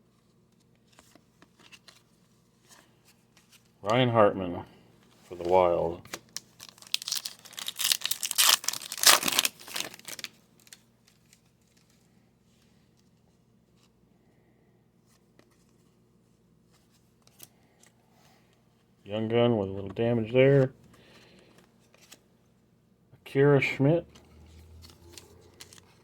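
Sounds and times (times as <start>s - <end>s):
foil wrapper tearing and crinkling: 6.4s - 10.8s.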